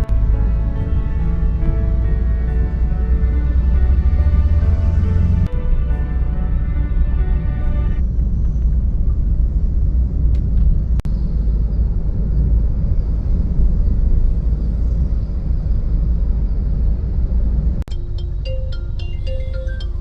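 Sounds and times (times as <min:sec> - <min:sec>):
music: 0:00.0 - 0:09.7, 0:17.9 - 0:20.0
loud low rumble: 0:00.0 - 0:19.2.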